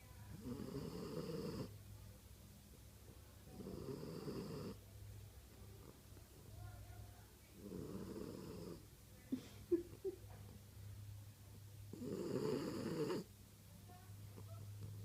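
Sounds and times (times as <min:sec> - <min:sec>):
dog snoring: 0:00.3 - 0:01.7, 0:03.5 - 0:04.8, 0:07.6 - 0:08.8, 0:11.9 - 0:13.3.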